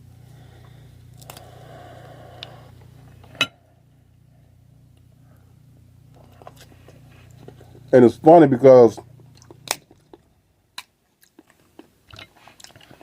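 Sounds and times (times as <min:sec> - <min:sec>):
low steady hum: 0:00.0 - 0:13.0
crab shell cracking: 0:09.2 - 0:10.2.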